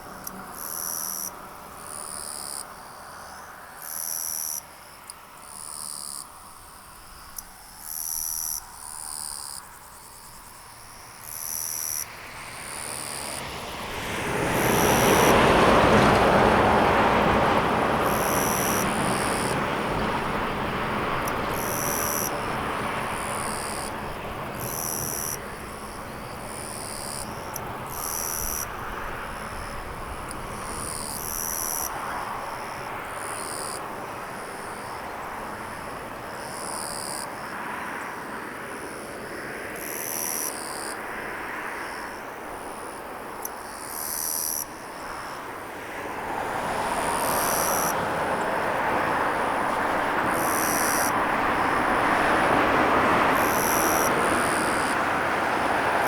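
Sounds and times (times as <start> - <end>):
high-pitched insect calls: 0.2 - 13.5, 18.0 - 20.2, 21.2 - 28.8, 29.5 - 33.8, 35.8 - 37.3, 39.8 - 41.0, 42.7 - 45.0, 47.0 - 47.9, 50.3 - 51.8, 53.4 - 55.0.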